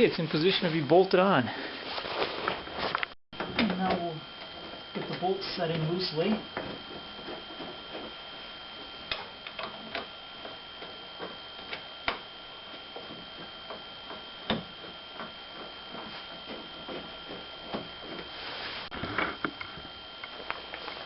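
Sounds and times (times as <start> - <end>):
thin high whine: 0.0 - 21.0.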